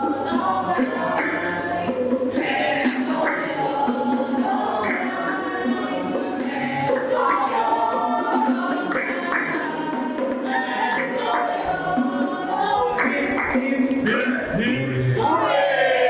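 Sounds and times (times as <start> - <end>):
group singing a worship song: 0.0 - 16.0
sharp percussive strokes: 0.7 - 15.4.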